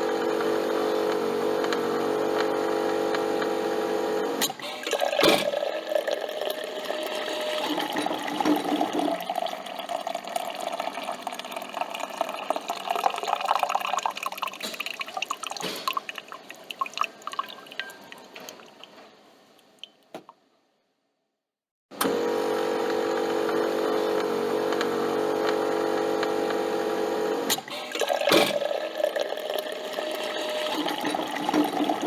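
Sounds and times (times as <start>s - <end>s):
coffee trickling into cup: 4.9s - 19.1s.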